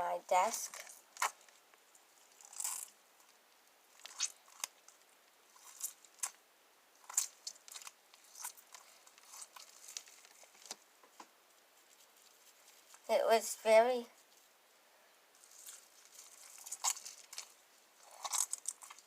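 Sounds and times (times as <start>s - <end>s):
slime squishing wet crackles: 3.9s - 6.4s, 7.0s - 10.8s, 15.4s - 19.0s.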